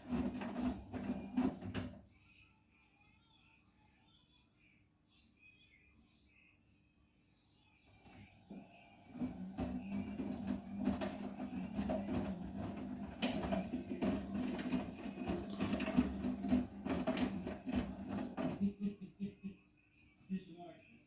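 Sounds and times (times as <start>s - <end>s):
washing machine motor hum: 0.0s - 2.1s, 7.9s - 19.5s
wet laundry and water tumbling: 0.0s - 2.1s, 7.9s - 18.9s.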